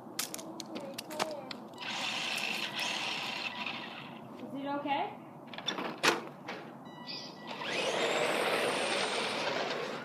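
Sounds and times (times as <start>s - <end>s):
clicks and knock of handling: 0.2s - 1.6s
toy car motor whirring: 1.8s - 4.2s, 7.5s - 10.0s.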